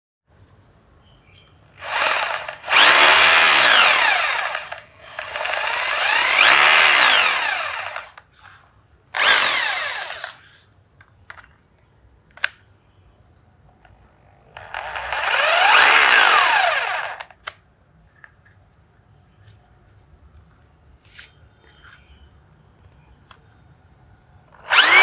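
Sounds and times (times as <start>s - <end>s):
hammer drill motor whine: 1.8s - 8.2s, 9.2s - 10.4s, 14.6s - 17.3s, 24.6s - 25.0s.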